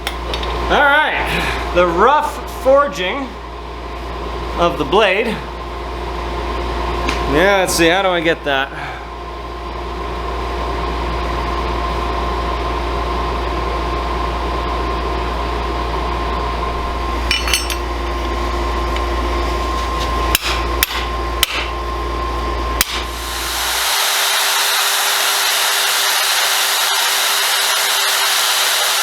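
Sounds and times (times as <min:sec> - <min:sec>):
shop machinery humming: 0:00.0 - 0:29.0
hammer striking steel: 0:17.3 - 0:17.9, 0:20.3 - 0:21.8.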